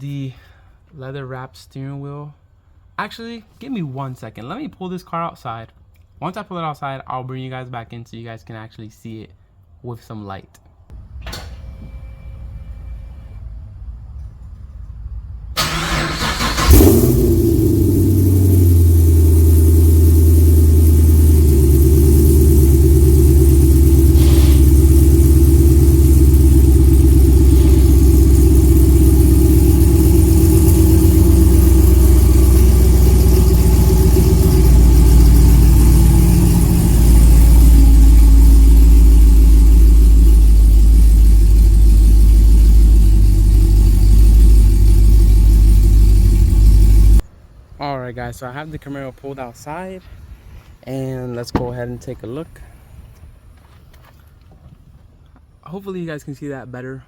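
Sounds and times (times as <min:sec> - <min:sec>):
car engine idling: 0:13.8 - 0:47.2
starter motor cranking: 0:15.6 - 0:19.3, 0:20.0 - 0:47.2.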